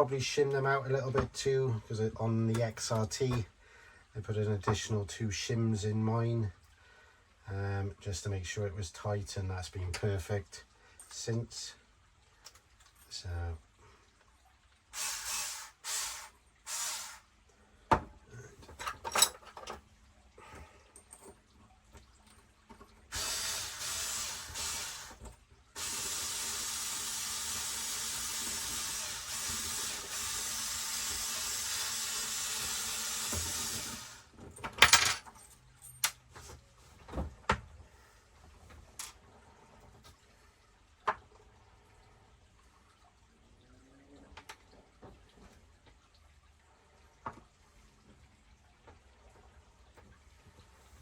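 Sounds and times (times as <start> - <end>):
clicks and knocks of small tools: 34.6 - 36.6, 39.0 - 39.2.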